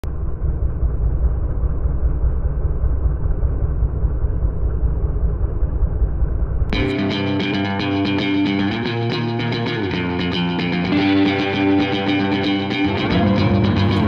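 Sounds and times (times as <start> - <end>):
loud low rumble: 0.0 - 14.0.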